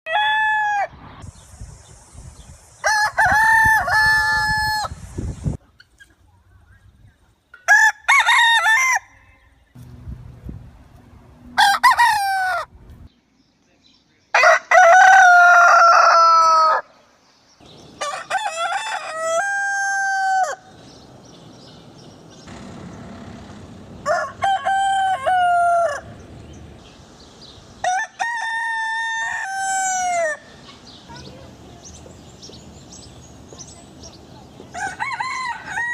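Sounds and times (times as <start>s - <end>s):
rooster crowing: 0.1s - 0.9s, 7.7s - 9.4s, 11.6s - 12.7s, 14.3s - 16.9s, 18.0s - 20.7s, 24.0s - 26.2s, 27.8s - 30.5s, 34.7s - 35.9s.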